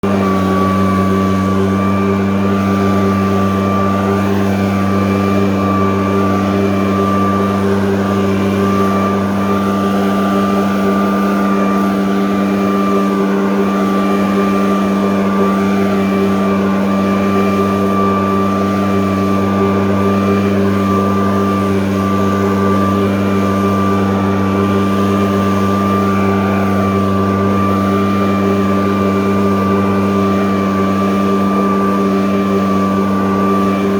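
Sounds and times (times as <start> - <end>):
blower engine running: 0.0 - 33.9
steady high whine: 0.0 - 33.9.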